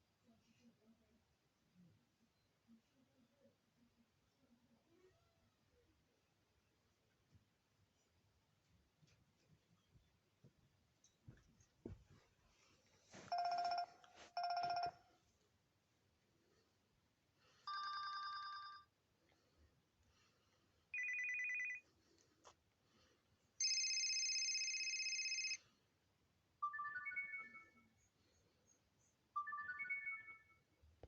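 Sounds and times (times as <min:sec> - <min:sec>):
electronic ringtone tones: 0:13.3 - 0:15.0, 0:21.0 - 0:21.8, 0:23.6 - 0:25.6, 0:26.6 - 0:27.9, 0:29.4 - 0:30.7
phone ringtone beeps: 0:13.3 - 0:15.0, 0:17.7 - 0:18.9, 0:21.0 - 0:21.8, 0:23.6 - 0:25.6, 0:26.6 - 0:27.9, 0:29.4 - 0:30.7.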